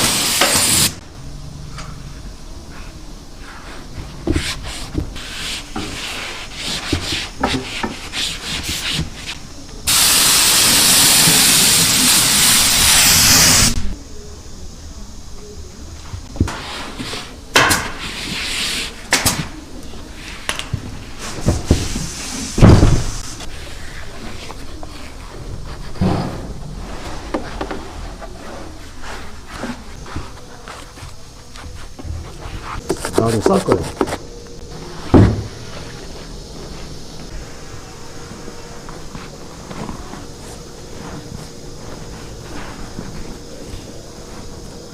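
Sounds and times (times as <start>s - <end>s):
compressed air hissing: 0.0s - 1.0s, 2.0s - 13.9s, 20.1s - 30.0s, 32.7s - 44.9s.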